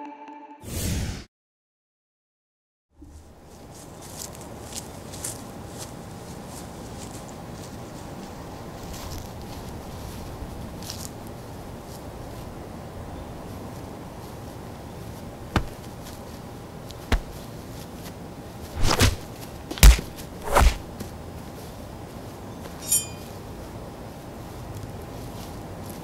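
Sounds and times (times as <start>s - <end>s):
punch and hit sound effects: 18.8s - 19.2s, 19.8s - 20.9s
swishing hit: 18.8s - 19.2s, 19.8s - 20.9s.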